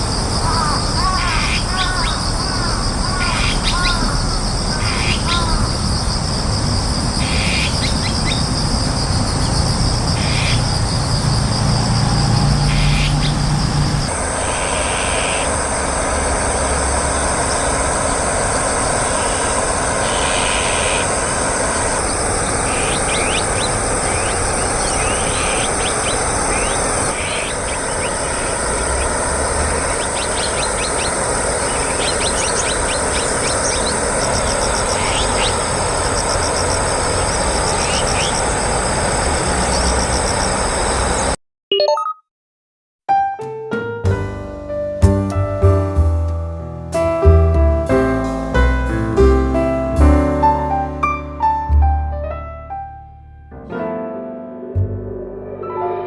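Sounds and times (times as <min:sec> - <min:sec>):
insects shrilling: 0:00.0 - 0:41.3
birds giving harsh calls: 0:00.3 - 0:05.8, 0:07.2 - 0:10.7, 0:12.4 - 0:13.4, 0:14.0 - 0:41.3.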